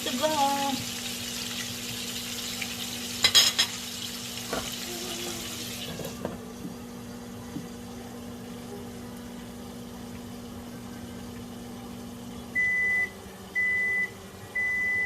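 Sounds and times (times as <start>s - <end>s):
meat sizzling in a pan: 0.0s - 6.2s.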